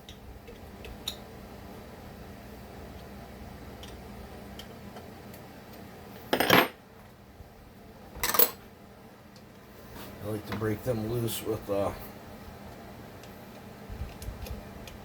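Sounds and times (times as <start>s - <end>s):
metal tool clattering down: 6.3s - 6.8s, 8.2s - 8.6s.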